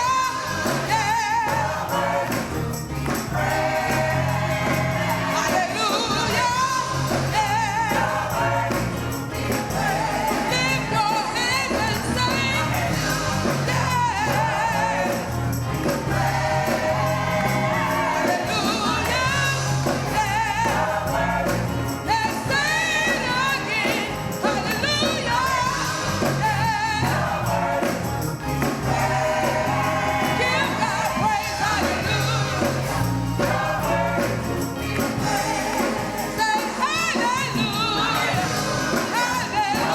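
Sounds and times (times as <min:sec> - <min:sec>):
gospel choir singing: 0:00.0 - 0:39.9.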